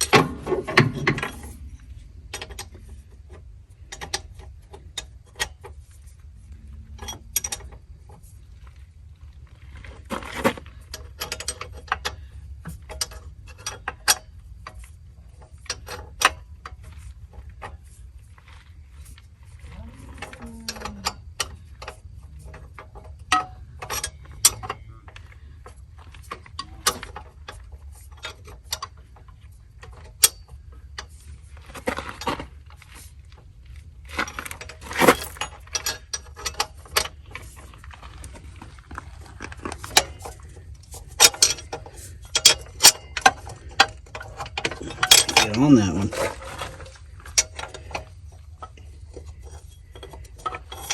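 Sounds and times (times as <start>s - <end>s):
metal sockets and bolts clinking: 34.3s - 37.6s, 39.7s - 50.9s.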